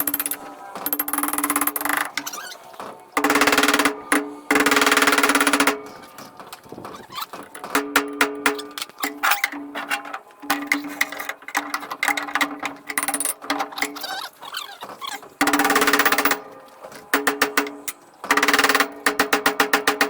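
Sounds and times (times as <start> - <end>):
handheld power tool rattling: 0.0 - 2.2, 15.4 - 16.4.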